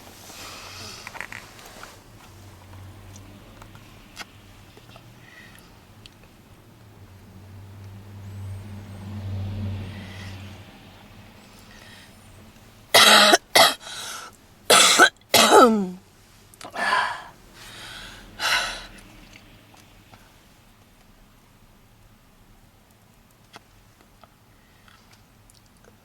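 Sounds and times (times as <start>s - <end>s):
woman coughing harshly: 13.0s - 16.0s.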